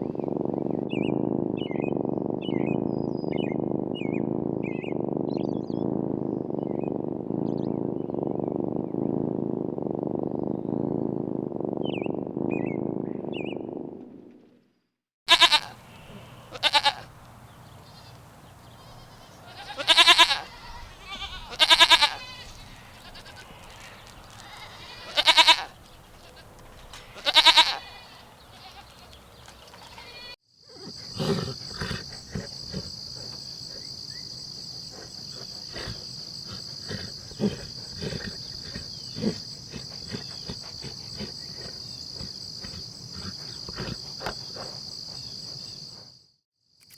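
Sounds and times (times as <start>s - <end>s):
young goat bleating: 15.3s - 17.1s, 17.9s - 29.2s, 29.8s - 30.4s
cricket chorus trilling: 15.3s - 46.9s.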